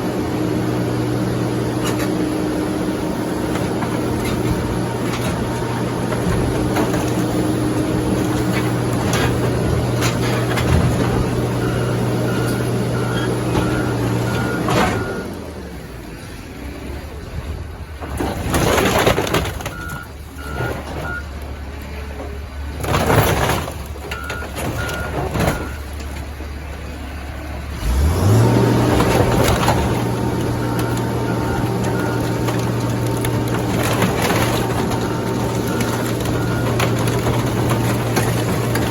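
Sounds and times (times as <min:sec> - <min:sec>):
diesel machinery engine: 0:00.0 - 0:38.9
backup alarm beeping: 0:11.5 - 0:15.3, 0:24.1 - 0:25.8.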